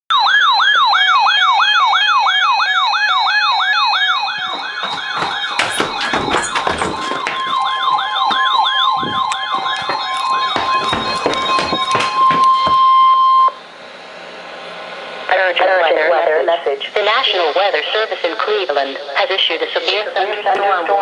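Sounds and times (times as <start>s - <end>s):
electronic siren yelping: 0.1s - 13.6s
steady alarm tone: 0.1s - 15.4s
crackling noise: 4.3s - 12.8s.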